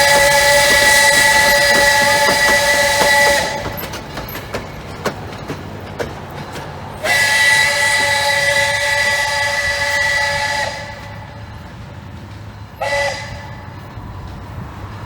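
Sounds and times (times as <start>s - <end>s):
steam locomotive whistle: 0.0s - 4.0s, 7.0s - 11.7s, 12.6s - 14.0s
train wheels clicking: 0.0s - 15.0s.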